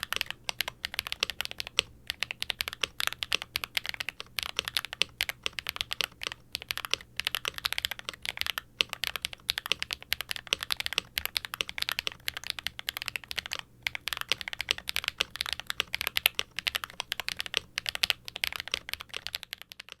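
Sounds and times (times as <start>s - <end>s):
fast mechanical keyboard typing: 0.0s - 20.0s.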